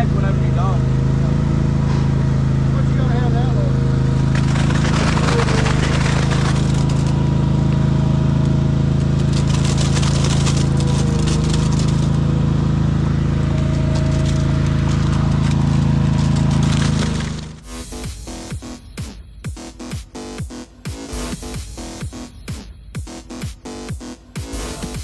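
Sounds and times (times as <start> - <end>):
engine running steadily: 0.0 - 25.0
crackling scraping noise: 4.3 - 7.3, 9.0 - 18.4.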